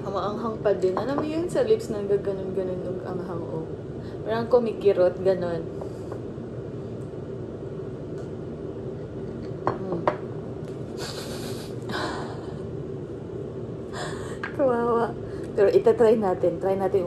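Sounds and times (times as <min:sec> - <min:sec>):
background hum: 0:00.0 - 0:17.0
breathy hisses: 0:10.9 - 0:12.6
person breathing hard: 0:11.0 - 0:12.7, 0:13.9 - 0:14.5.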